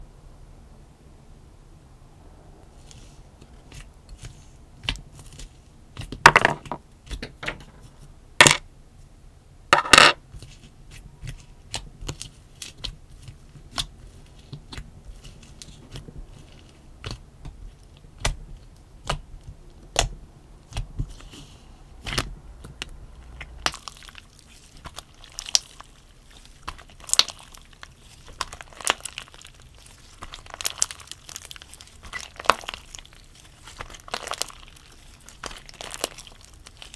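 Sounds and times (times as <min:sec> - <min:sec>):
slime sticky clicks and crackles: 0:26.6 - 0:36.9.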